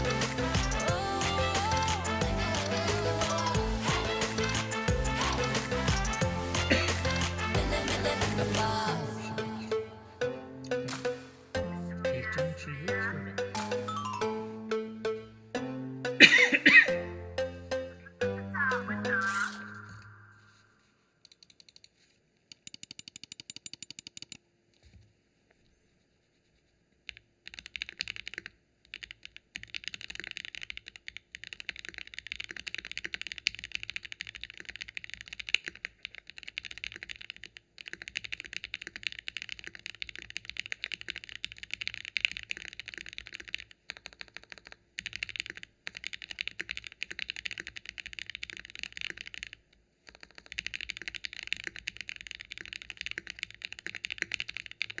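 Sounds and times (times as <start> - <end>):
mechanical keyboard typing: 22.5 - 24.4, 27.1 - 55.0.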